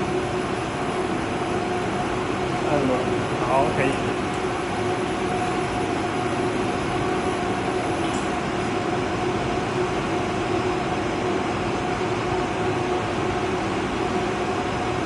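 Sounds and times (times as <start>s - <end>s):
machinery hum: 0.0s - 15.0s.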